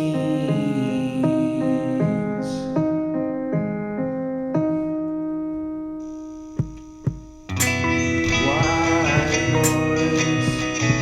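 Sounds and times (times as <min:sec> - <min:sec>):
piano playing slow chords: 0:00.0 - 0:11.0
band playing: 0:06.6 - 0:11.0.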